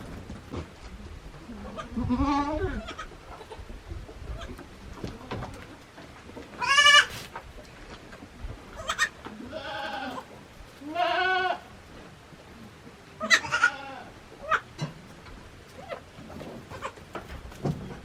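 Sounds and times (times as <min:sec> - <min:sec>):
goats bleating: 0:01.6 - 0:03.7, 0:06.6 - 0:07.1, 0:08.8 - 0:11.7, 0:13.2 - 0:14.6.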